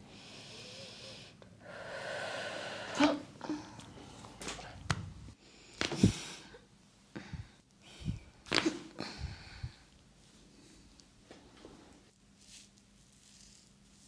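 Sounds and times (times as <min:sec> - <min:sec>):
breathing: 0:00.1 - 0:04.3, 0:07.2 - 0:08.3, 0:09.0 - 0:09.9.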